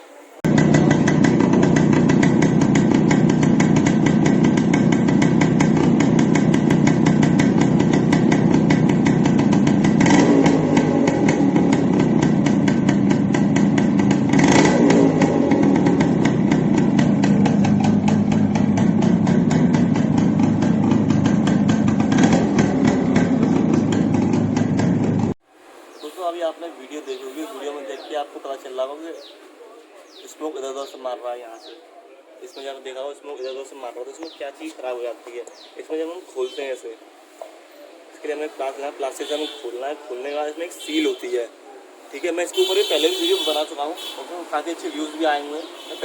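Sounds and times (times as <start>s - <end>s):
two-stroke motorcycle engine crackling: 0.5s - 25.4s.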